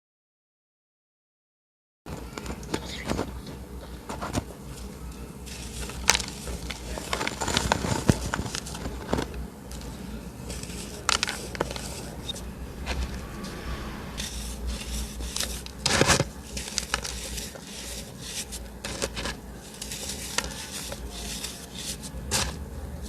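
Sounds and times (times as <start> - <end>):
chalk being crushed: 5.4 - 9.3, 10.5 - 12.4, 14.2 - 22.6.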